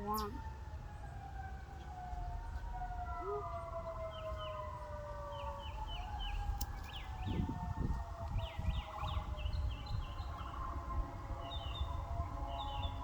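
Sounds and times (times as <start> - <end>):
distant siren wailing: 0.0 - 13.0
bird chirping: 5.2 - 7.4, 11.4 - 13.0.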